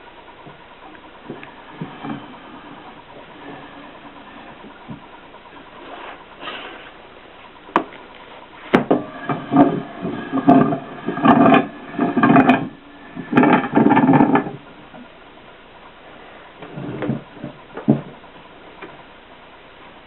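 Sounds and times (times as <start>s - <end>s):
creaking metal grinding strokes: 1.2s - 7.0s, 8.6s - 15.1s, 16.6s - 17.9s.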